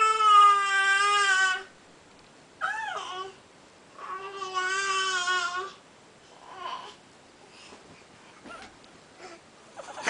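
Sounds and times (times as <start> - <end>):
baby whining cry: 0.0 - 1.7, 2.6 - 3.4, 4.0 - 5.8, 6.4 - 7.0.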